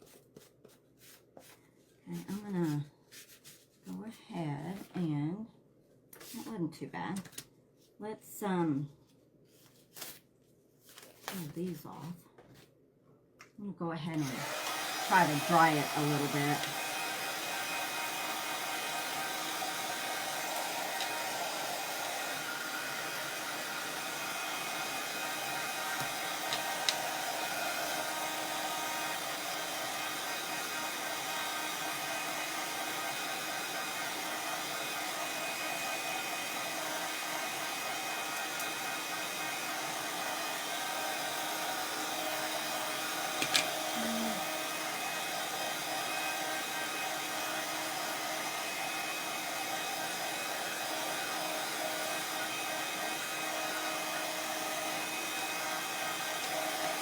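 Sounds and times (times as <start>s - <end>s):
hot-air blower running: 14.2s - 57.0s.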